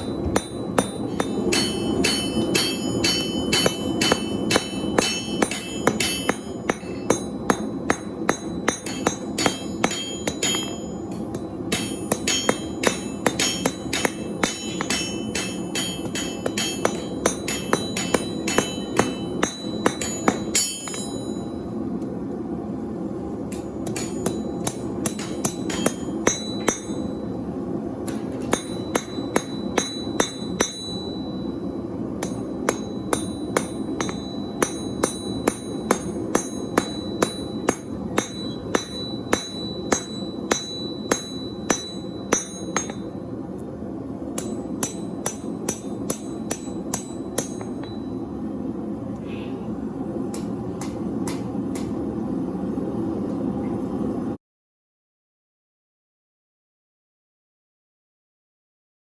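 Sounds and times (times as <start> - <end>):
hammer ringing on steel: 0.0 - 21.6, 23.5 - 27.3, 28.1 - 43.2, 44.4 - 48.4.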